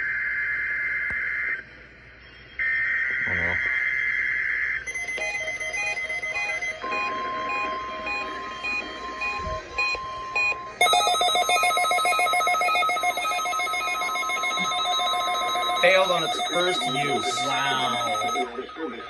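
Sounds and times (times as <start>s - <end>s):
rapidly pulsing electronic alarm: 0.0s - 19.0s
steady alert tone: 5.3s - 19.0s.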